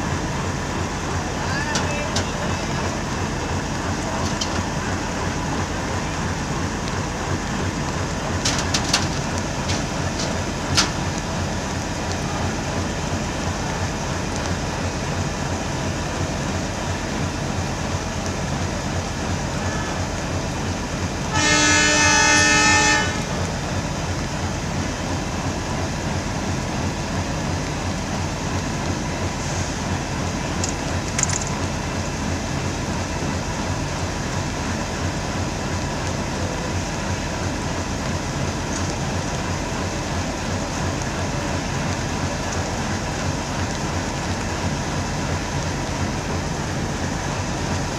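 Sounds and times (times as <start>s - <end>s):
train running noise: 0.0s - 47.9s
diesel locomotive horn blast: 19.5s - 20.3s, 21.2s - 23.5s.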